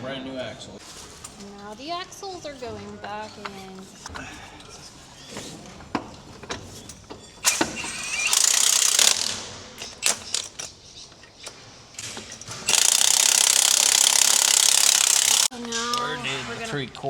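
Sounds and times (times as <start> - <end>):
metal clanks and knocks: 5.2 - 8.0, 9.3 - 12.8
pneumatic air tool running: 7.4 - 10.7, 12.5 - 15.5.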